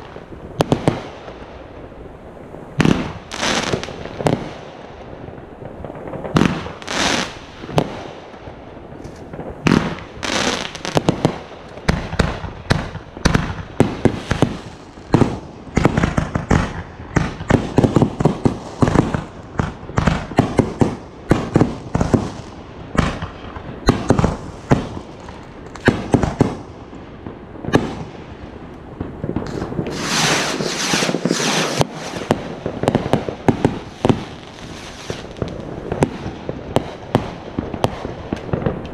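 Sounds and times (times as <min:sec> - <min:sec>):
fireworks bangs: 0:00.0 - 0:38.9
fireworks hissing: 0:14.0 - 0:16.4, 0:29.4 - 0:36.3.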